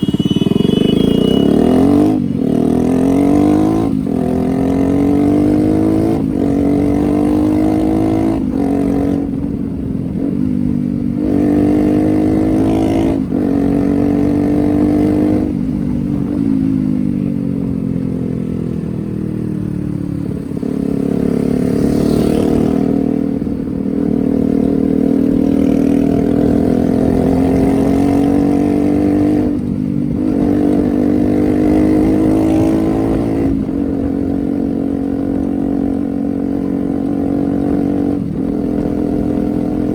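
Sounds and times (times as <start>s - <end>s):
motorcycle engine shifting gears: 0.0s - 39.9s.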